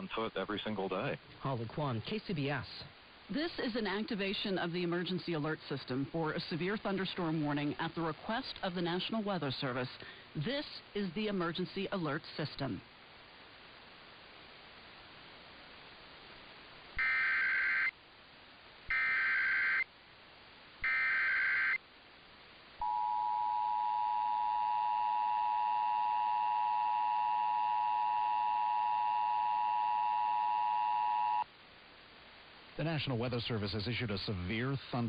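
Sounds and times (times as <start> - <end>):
digital data screech bursts: 17.0 - 17.9, 20.8 - 21.8
two-tone attention signal: 22.8 - 31.4.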